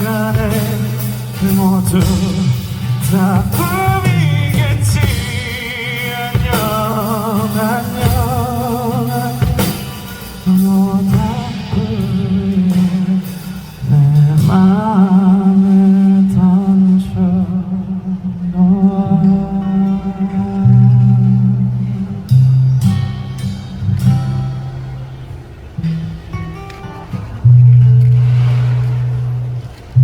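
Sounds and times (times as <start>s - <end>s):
drum kit: 0.0s - 15.2s, 28.0s - 30.0s
man singing with vibrato: 0.0s - 23.3s
acoustic guitar: 0.0s - 30.0s.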